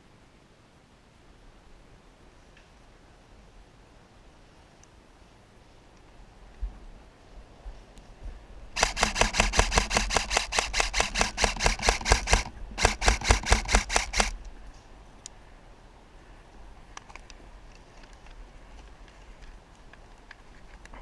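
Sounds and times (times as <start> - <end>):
airsoft rifle firing bursts: 8.8 - 14.4.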